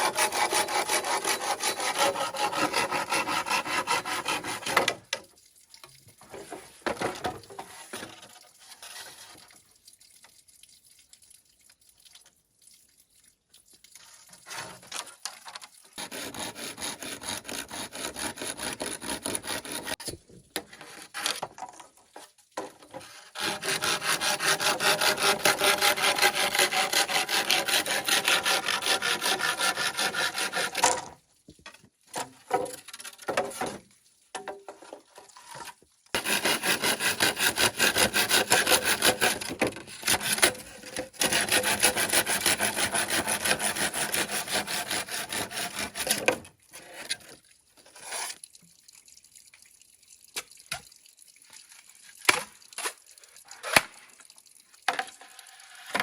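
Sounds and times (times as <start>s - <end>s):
hand saw cutting bamboo: 0.0s - 5.0s, 16.0s - 20.1s, 23.0s - 31.1s, 36.2s - 47.2s.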